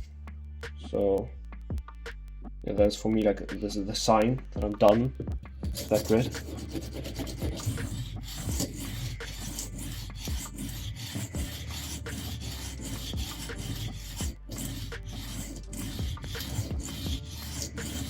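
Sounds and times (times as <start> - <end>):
blade scraping on whetstone: 5.8 - 18.0.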